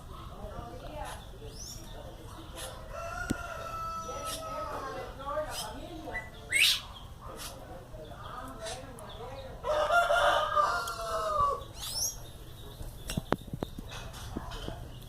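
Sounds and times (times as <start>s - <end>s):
rooster crowing: 2.9s - 5.0s, 9.6s - 11.6s.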